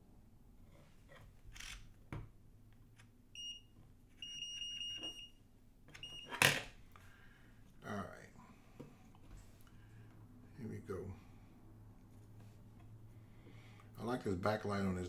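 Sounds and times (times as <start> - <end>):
multimeter beeping: 3.4 - 5.4, 6.0 - 6.4.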